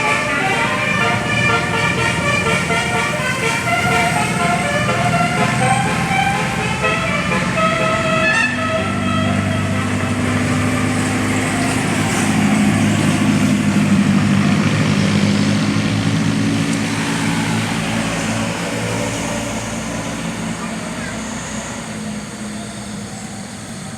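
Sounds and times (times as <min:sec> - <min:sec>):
multi-tone bus horn tune: 0:00.0 - 0:15.7
bus engine drone passing: 0:00.0 - 0:23.9.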